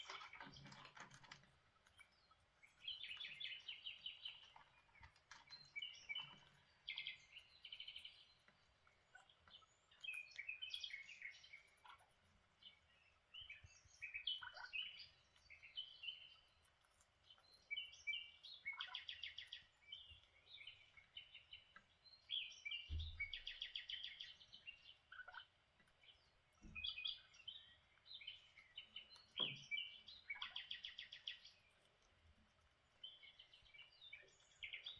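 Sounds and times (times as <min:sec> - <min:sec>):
parakeets chirping and chattering: 0:00.0 - 0:16.5.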